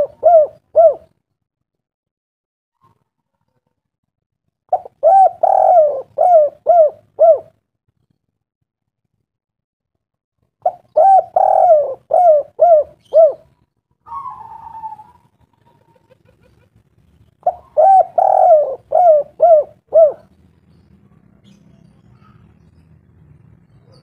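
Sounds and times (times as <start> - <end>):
bird calling: 4.7 - 7.5, 10.7 - 13.5, 14.1 - 16.7, 17.4 - 20.4.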